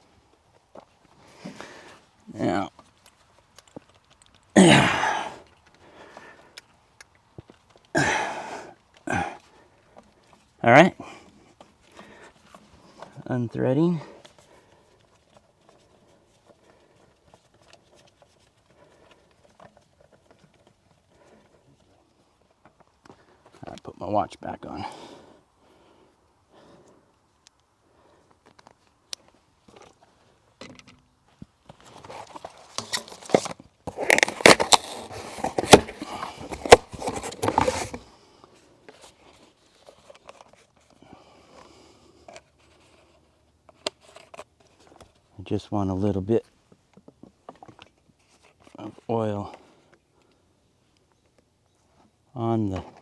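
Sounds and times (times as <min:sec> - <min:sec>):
objects scraping and rustling: 0:31.6 - 0:41.0, 0:41.6 - 0:45.3.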